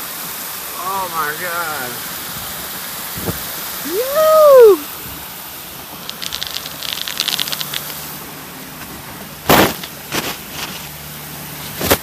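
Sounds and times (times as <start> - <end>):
hurricane wind and rain: 0.0 - 12.0
rapid crackling rattle: 6.0 - 8.2.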